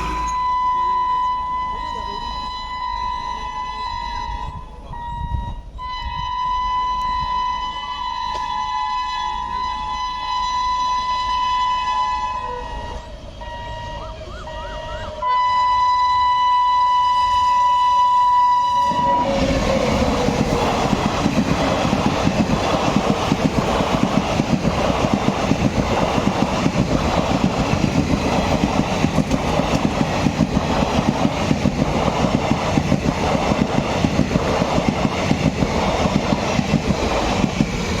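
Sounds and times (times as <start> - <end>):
train horn: 0.0 - 20.2.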